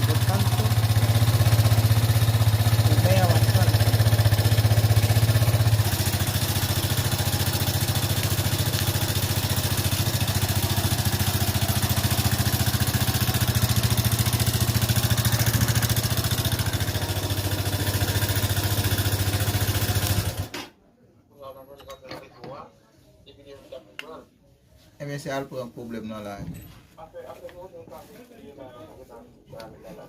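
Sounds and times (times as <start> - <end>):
motorcycle engine idling: 0.0 - 20.5.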